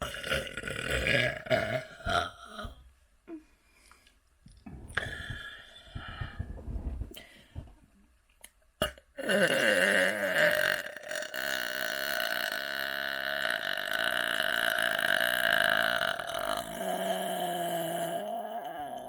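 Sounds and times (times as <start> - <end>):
long human burp: 0.0 - 2.9, 8.8 - 19.0.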